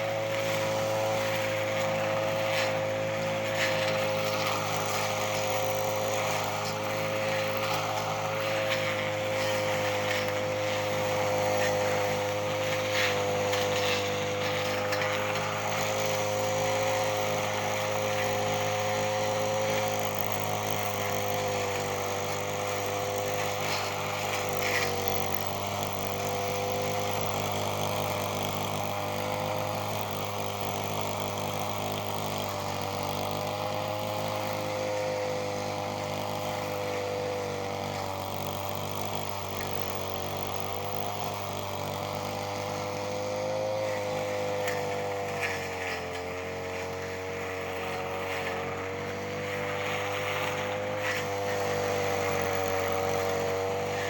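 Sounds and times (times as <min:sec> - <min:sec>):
brush cutter engine running: 0:00.0 - 0:54.0.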